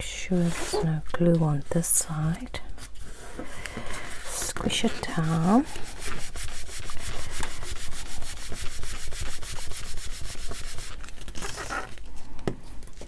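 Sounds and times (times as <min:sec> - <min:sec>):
hand rubbing over paper: 0:04.0 - 0:11.1.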